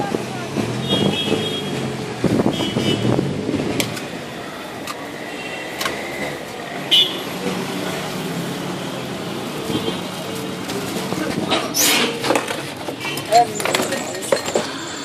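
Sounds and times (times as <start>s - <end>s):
traffic noise: 0.0s - 15.0s
indistinct voices: 3.5s - 15.0s.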